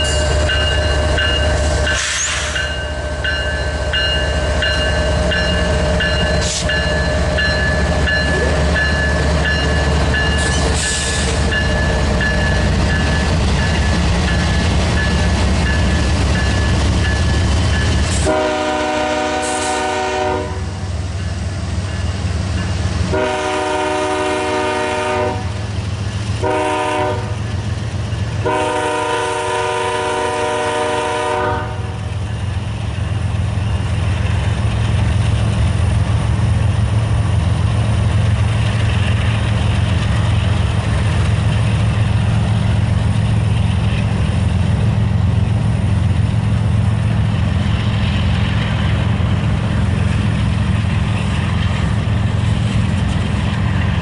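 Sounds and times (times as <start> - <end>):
train rumbling: 0.0 - 54.0
locomotive air horn blasts: 18.2 - 20.7, 23.1 - 25.6, 26.4 - 27.4, 28.4 - 32.0.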